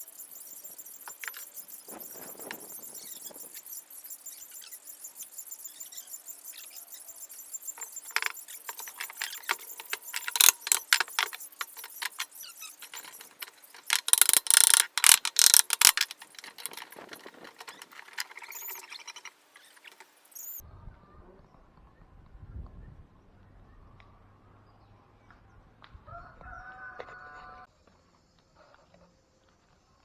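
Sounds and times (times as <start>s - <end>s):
mechanical clicks and knocks: 7.6s - 20.6s.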